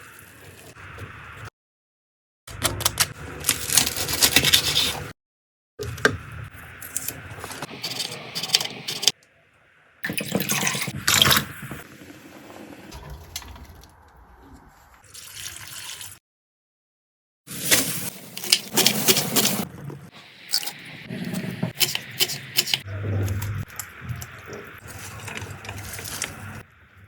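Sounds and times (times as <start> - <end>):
kitchen clattering and scraping: 7.6 - 9.1, 17.6 - 26.6
water splashing and pouring: 10.0 - 16.2, 23.2 - 26.7.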